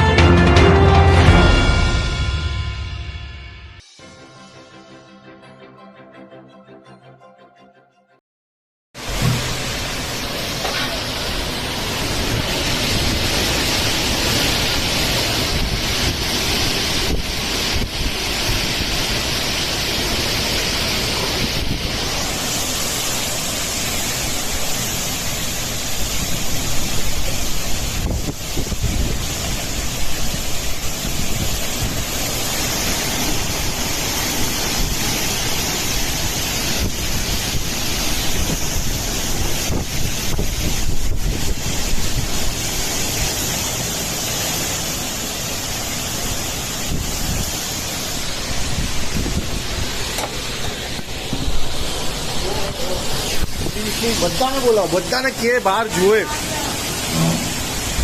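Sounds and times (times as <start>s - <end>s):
heavy rain: 0.0s - 2.6s, 9.0s - 58.0s
wind rumbling on microphone: 11.2s - 44.6s, 46.1s - 54.6s, 56.6s - 58.0s.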